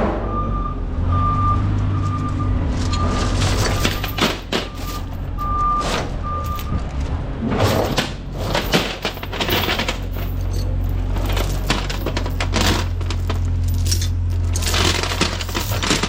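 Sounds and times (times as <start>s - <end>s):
vehicle backup alarm beeping: 0.0s - 7.0s
low engine hum: 0.0s - 16.0s.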